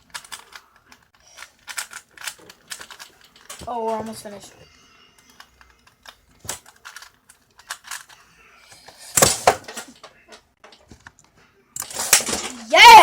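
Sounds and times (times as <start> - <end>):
plastic cube clatter: 0.0 - 4.4, 5.3 - 8.2, 11.8 - 12.8.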